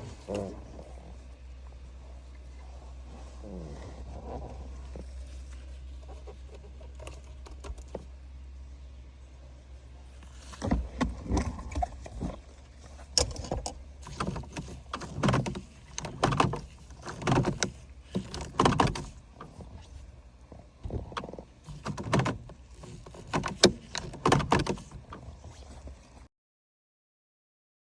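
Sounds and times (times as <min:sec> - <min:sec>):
low hum: 0:00.0 - 0:21.2
knocks clicks and rattles: 0:13.0 - 0:19.6, 0:20.8 - 0:25.1.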